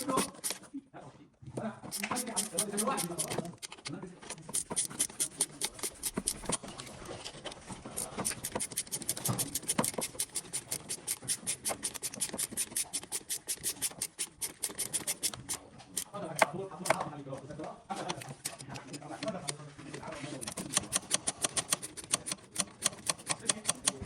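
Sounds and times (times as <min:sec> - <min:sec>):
rapid scratching strokes: 0:00.0 - 0:00.7, 0:01.9 - 0:03.6, 0:04.4 - 0:07.2, 0:08.0 - 0:16.1, 0:20.0 - 0:24.0.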